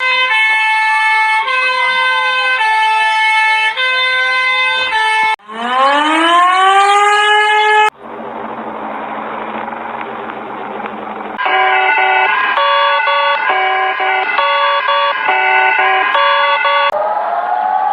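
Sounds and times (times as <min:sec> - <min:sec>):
siren winding up: 0:05.4 - 0:07.9, 0:11.4 - 0:17.0
electronic alarm tones: 0:11.4 - 0:17.0.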